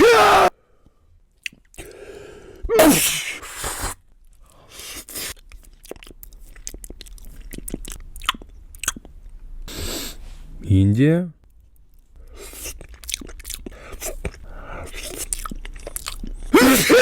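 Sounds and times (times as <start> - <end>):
person sneezing: 2.7 - 4.0, 16.5 - 17.0.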